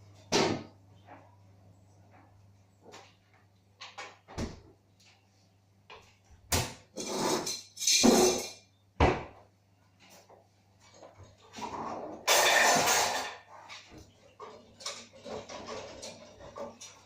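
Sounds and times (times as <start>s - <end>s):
objects scraping: 7.0s - 8.4s.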